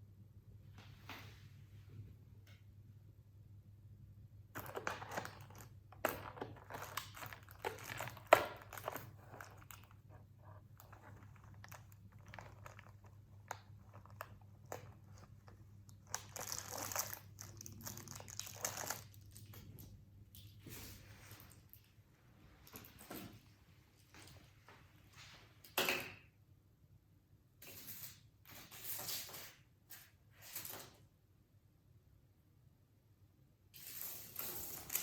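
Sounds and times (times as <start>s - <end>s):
candy wrapper crinkling: 4.6s - 19.6s.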